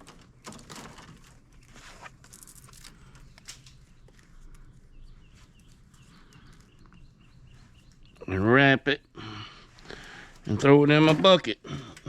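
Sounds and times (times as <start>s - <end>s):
wire rustling and scraping: 0.0s - 8.1s
bird chirping: 3.0s - 10.0s.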